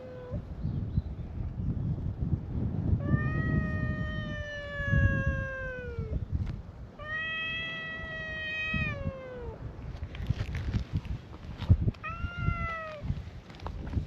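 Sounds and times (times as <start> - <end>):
cat meowing: 3.0 - 6.2, 7.0 - 9.6, 12.0 - 13.0.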